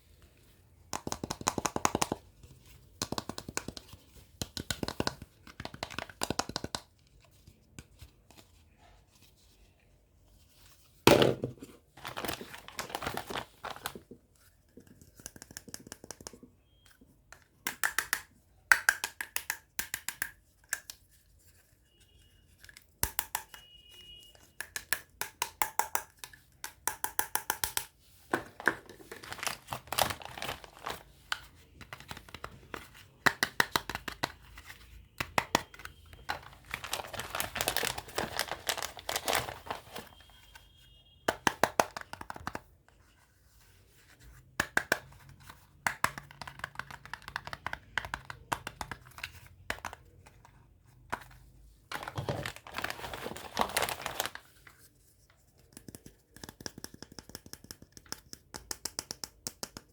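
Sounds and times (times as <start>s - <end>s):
packaging tearing and crinkling: 29.1s - 31.0s, 36.3s - 40.2s, 52.0s - 54.4s.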